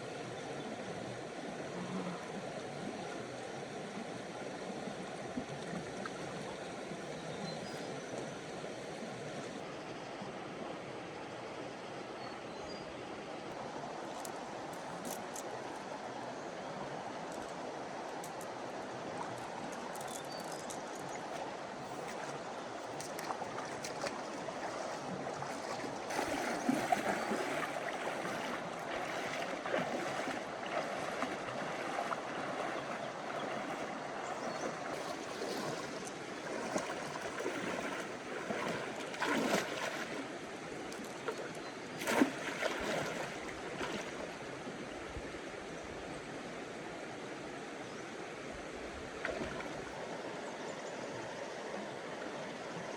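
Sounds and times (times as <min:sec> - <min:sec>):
floodwater flowing: 0:13.5 - 0:45.0, 0:48.8 - 0:50.4
water splashing and sloshing: 0:13.9 - 0:16.0, 0:17.3 - 0:44.8, 0:49.0 - 0:50.2.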